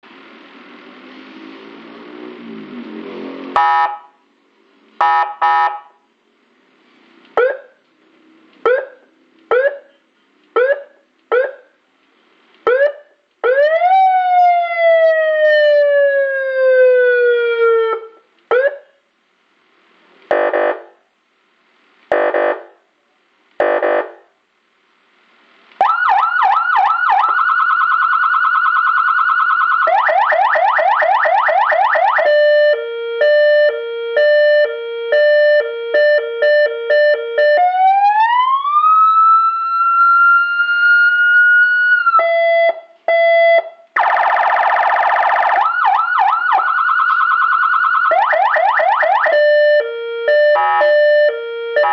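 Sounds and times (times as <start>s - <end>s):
electronic siren cycling tones: 3.5s - 4.2s, 5.0s - 6.0s, 7.4s - 7.8s, 8.6s - 9.9s, 10.6s - 11.8s, 25.8s - 51.9s
harsh horn blasts: 20.3s - 21.0s, 22.1s - 22.8s, 23.6s - 24.3s, 50.5s - 51.0s.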